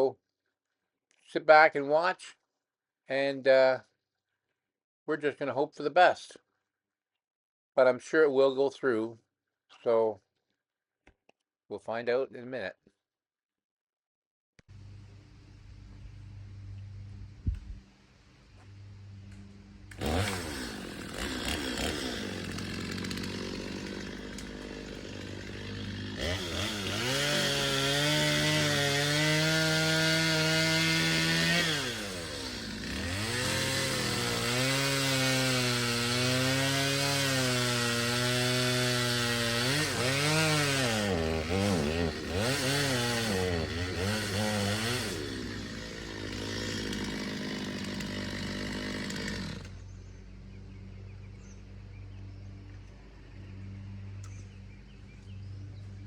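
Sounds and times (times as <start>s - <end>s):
chainsaw cutting wood: 19.4s - 50.0s.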